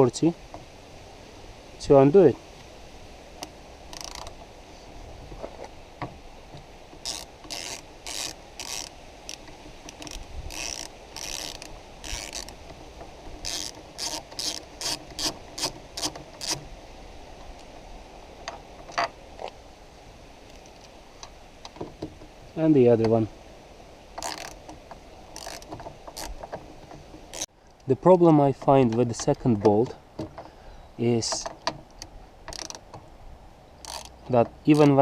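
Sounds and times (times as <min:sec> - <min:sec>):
ratchet clicking: 0:03.9 - 0:04.4, 0:07.0 - 0:12.6, 0:13.4 - 0:16.6, 0:24.2 - 0:24.6, 0:25.4 - 0:26.4, 0:32.0 - 0:32.8, 0:33.8 - 0:34.9.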